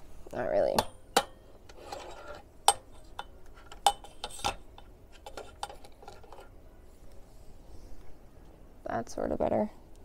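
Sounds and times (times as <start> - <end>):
clicks and knocks of hard objects: 0.8 - 6.5.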